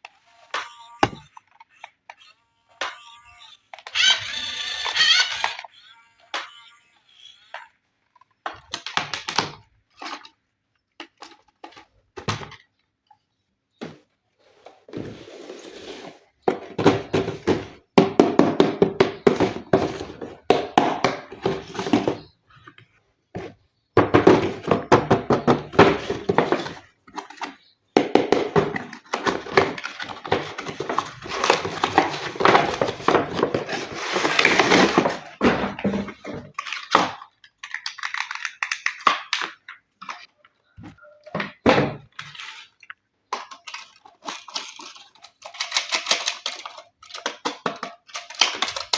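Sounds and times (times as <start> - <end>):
plastic clattering and clicking: 7.2 - 13.2, 16.4 - 48.9
knocks on plastic: 16.5 - 22.3.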